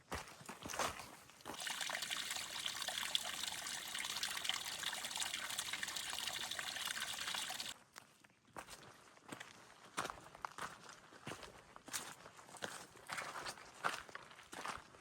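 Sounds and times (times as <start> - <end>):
trickle of running water: 1.4 - 7.8.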